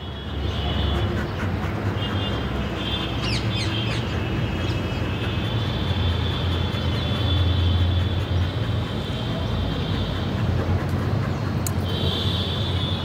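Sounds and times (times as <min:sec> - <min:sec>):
birds chirping: 0:00.4 - 0:06.0.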